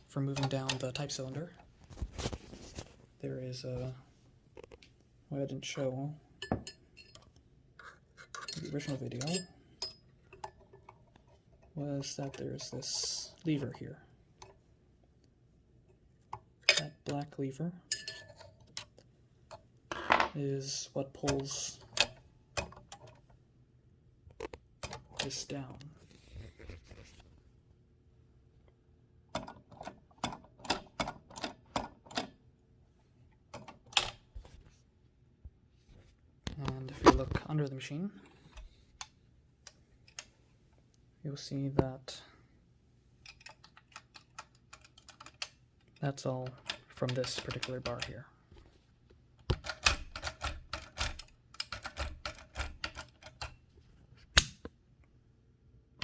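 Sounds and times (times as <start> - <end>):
typewriter key metal clacks: 49.6 - 53.5.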